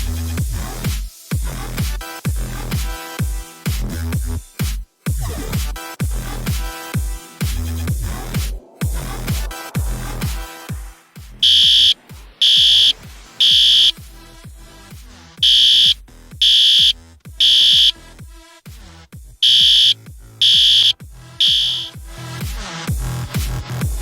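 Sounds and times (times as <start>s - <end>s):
electronic dance music: 0.0s - 24.0s
fire alarm horn blasts: 11.4s - 14.0s, 15.4s - 17.9s, 19.4s - 21.9s.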